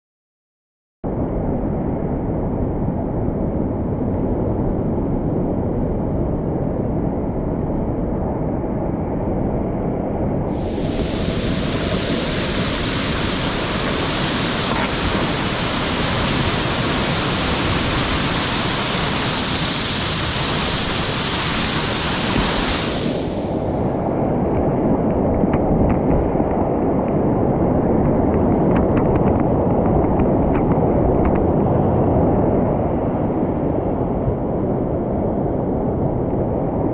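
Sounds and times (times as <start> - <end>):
rushing stream water: 10.6 - 24.5.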